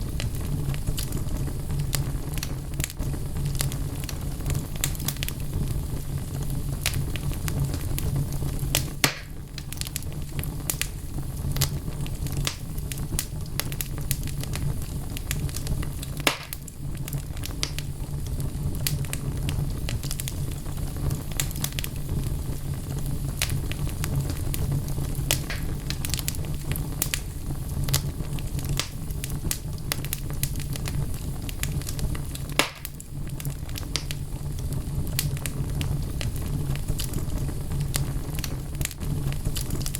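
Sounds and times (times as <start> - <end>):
logs crackling in fire: 0.0 - 39.9
low rumble of flame: 0.0 - 39.9
loud wood snaps: 9.0 - 9.4, 16.2 - 16.6, 25.3 - 26.3, 32.6 - 32.9.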